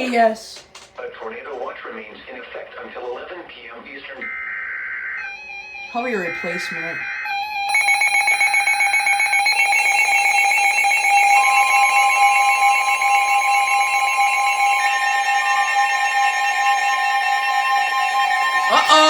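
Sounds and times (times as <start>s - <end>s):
pulsing electronic alarm: 3.7s - 19.0s
high steady tone: 4.2s - 19.0s.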